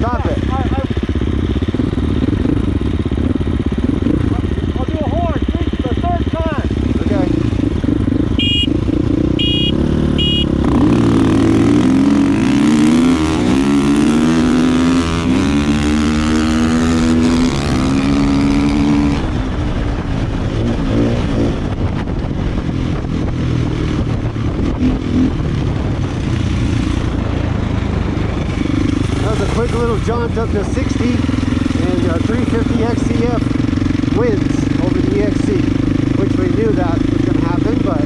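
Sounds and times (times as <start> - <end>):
motorcycle engine revving: 0.0 - 38.0
motorcycle horn beeps: 8.3 - 10.7.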